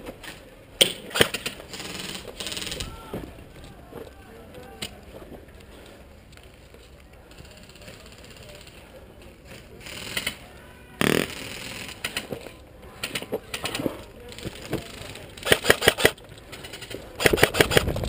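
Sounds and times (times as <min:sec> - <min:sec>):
airsoft guns firing: 0:00.8 - 0:02.8, 0:15.4 - 0:16.2, 0:17.2 - 0:18.0.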